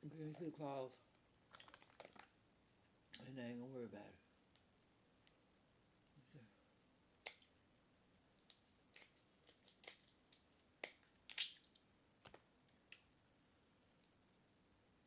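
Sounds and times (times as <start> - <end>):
crab shells cracking: 1.5 - 2.3, 8.4 - 12.4.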